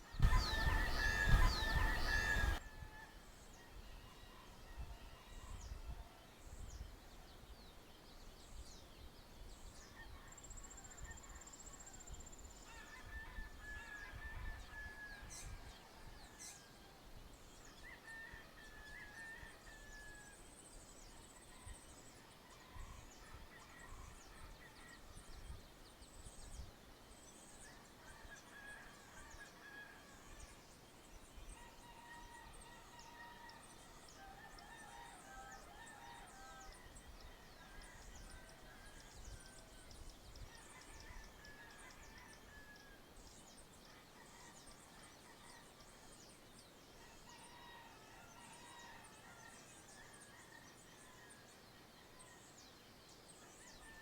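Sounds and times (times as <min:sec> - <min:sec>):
distant roosters crowing: 0:00.0 - 0:03.2, 0:47.1 - 0:50.6
small birds chirping: 0:00.2 - 0:02.6.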